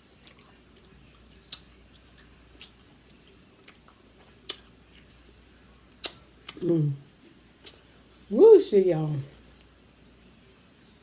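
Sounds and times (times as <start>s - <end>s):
chewing crab: 0.2s - 5.4s.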